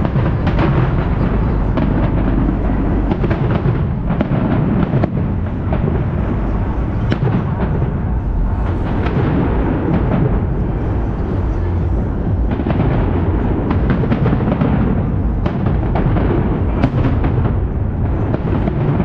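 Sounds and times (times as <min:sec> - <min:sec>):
fireworks bangs and crackles: 0:00.0 - 0:19.0.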